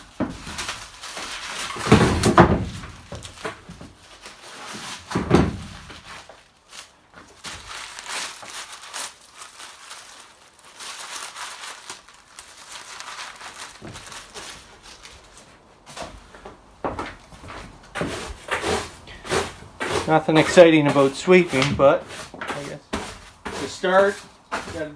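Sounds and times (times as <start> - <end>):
broom scraping on metal floor: 18.0 - 24.9.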